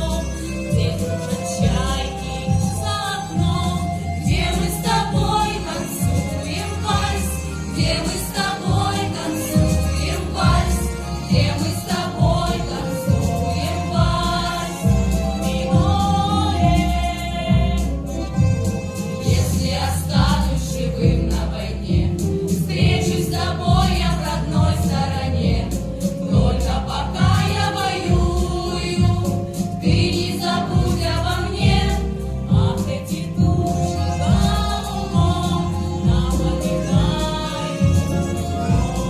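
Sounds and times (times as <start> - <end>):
pulsing bass beat: 0.0 - 39.0
vocal ensemble singing: 0.0 - 39.0.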